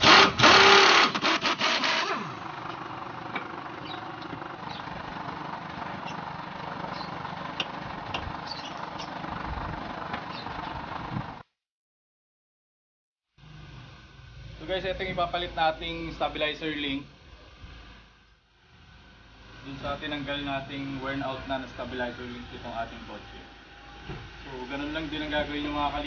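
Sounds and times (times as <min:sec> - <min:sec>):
rapid mechanical rattling: 0:00.0 - 0:11.4
steady mechanical noise: 0:00.0 - 0:11.4, 0:13.4 - 0:26.0.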